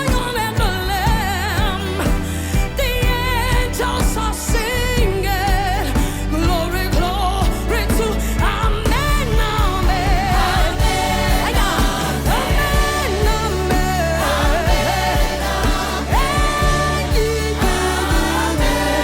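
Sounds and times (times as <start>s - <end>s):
steady beat and bass: 0.0s - 19.0s.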